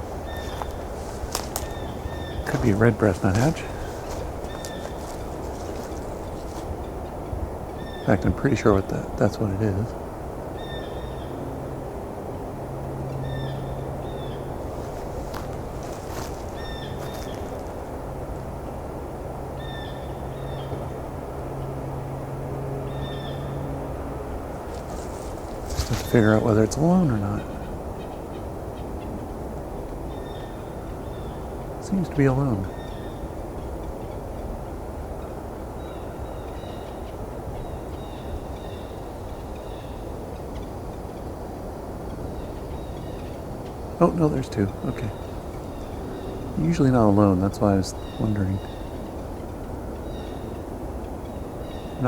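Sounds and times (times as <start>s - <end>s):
bird squeaking calls: 0.0s - 6.6s, 13.2s - 17.8s
nuthatch nasal calls: 0.0s - 8.6s, 13.1s - 17.8s, 35.2s - 52.0s
low background rumble: 0.0s - 52.0s
steady low hum: 0.0s - 52.0s.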